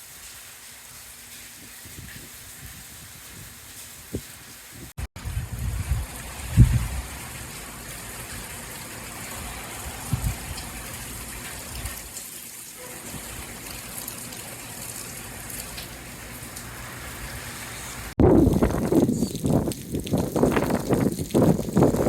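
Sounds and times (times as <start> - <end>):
steady rain falling: 0.0 - 22.0
wind buffeting microphone: 1.5 - 7.6, 9.2 - 12.1, 18.2 - 22.0.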